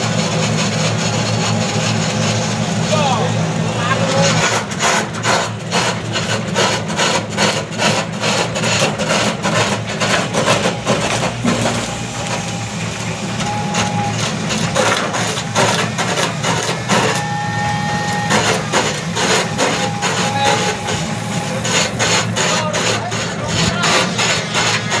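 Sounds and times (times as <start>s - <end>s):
diesel engine humming: 0.0s - 25.0s
cutting tool rasping on wood: 4.4s - 11.9s, 18.3s - 25.0s.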